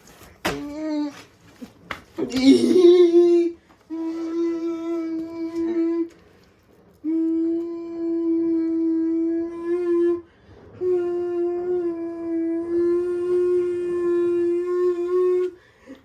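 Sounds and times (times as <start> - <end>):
child humming: 2.2 - 6.1, 7.0 - 15.6.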